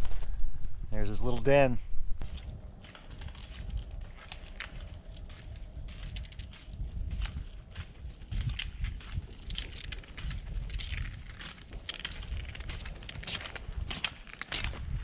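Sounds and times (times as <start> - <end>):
low rumble: 0.0 - 2.4.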